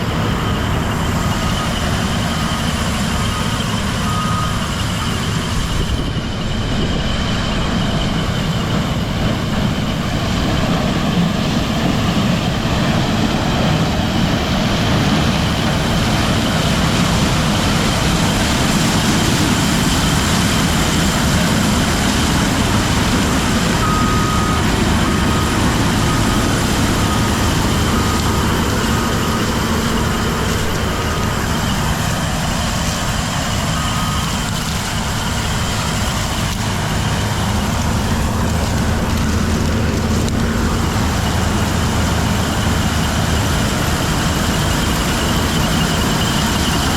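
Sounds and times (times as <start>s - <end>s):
farm machinery engine drone: 0.0s - 46.9s
short electronic beeps: 1.2s - 5.7s, 23.8s - 32.3s, 33.5s - 34.7s.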